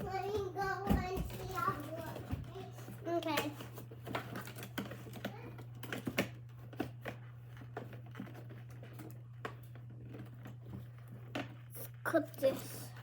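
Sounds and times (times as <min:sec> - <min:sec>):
cardboard packaging rustling: 0:01.2 - 0:11.5.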